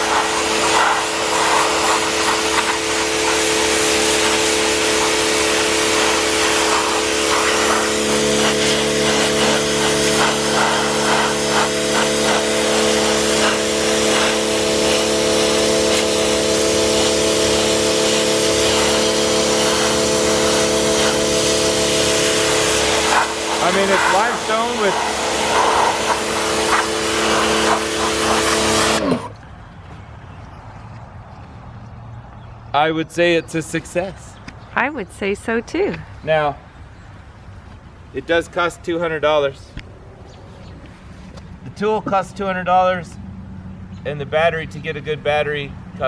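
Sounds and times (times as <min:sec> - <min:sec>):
pressure washer motor whine: 0:00.0 - 0:29.4
water jet spraying onto rocks: 0:00.0 - 0:29.4.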